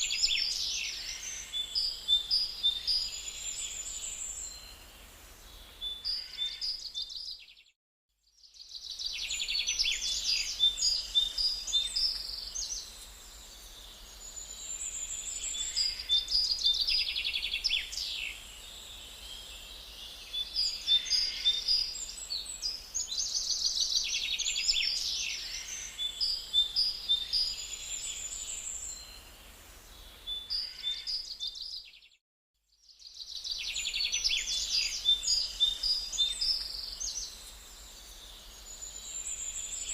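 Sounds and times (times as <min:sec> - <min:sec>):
songbirds trilling and chirping: 0:00.0 - 0:07.6, 0:08.4 - 0:32.1, 0:32.8 - 0:39.9.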